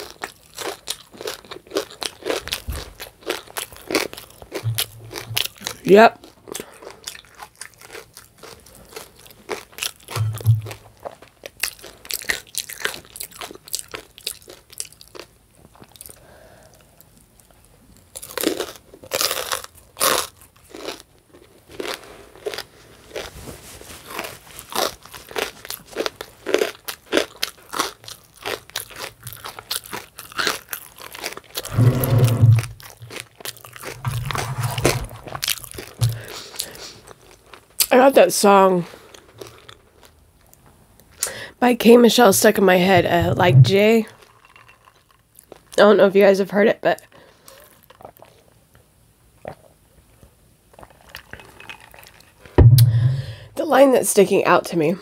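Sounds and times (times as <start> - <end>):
crunchy food chewing: 0.0 - 38.0, 38.8 - 41.3, 44.1 - 45.8, 47.0 - 48.8, 49.4 - 53.1
low thuds: 31.7 - 33.2, 33.9 - 35.4, 42.9 - 44.0, 52.6 - 53.6.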